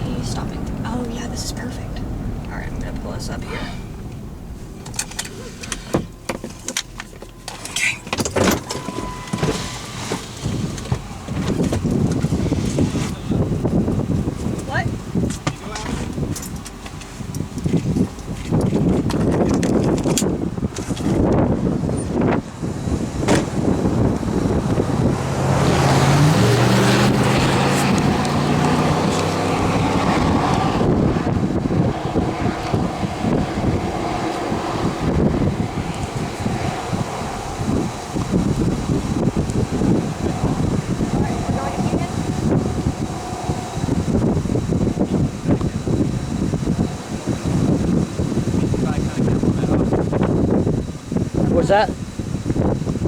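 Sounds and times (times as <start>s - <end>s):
car engine and road rumble: 0.0s - 53.0s
gusty wind on microphone: 0.0s - 53.0s
brief steady beep: 8.7s - 9.7s.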